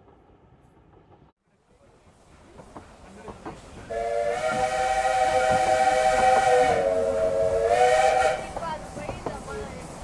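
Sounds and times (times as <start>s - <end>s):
steam hissing: 2.0s - 10.0s
steam locomotive whistle: 3.9s - 8.6s.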